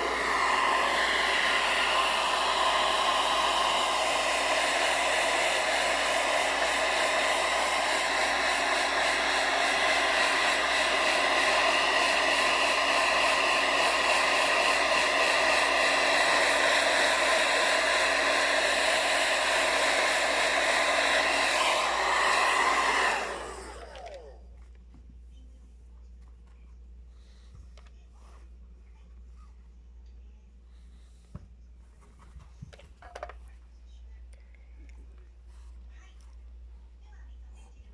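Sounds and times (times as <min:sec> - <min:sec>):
fan spinning down: 0:00.0 - 0:24.5
hair dryer blowing with motor whine: 0:00.0 - 0:24.5.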